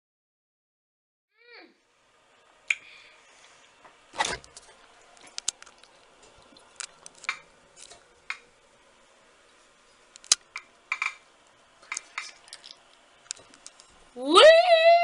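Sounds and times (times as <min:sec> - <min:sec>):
small objects clicking and knocking: 0:11.8 - 0:13.9.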